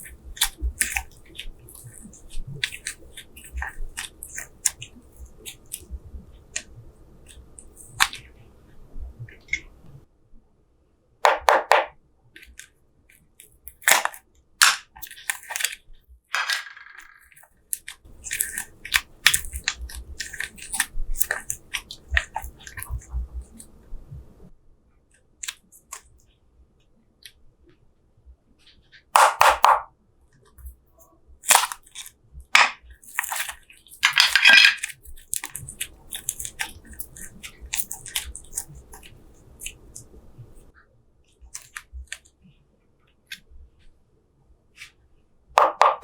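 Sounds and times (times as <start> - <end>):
slime wet crackles and pops: 0.0 - 6.7, 17.7 - 23.7, 31.4 - 40.7
slime snapping: 13.7 - 15.8, 29.2 - 29.9, 31.4 - 40.1, 45.6 - 46.0.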